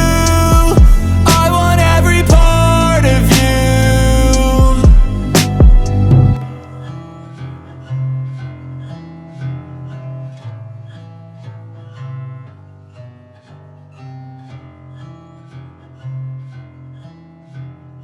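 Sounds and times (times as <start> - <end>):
sustained bass notes: 0.0 - 7.8
plucked guitar notes: 0.0 - 18.0.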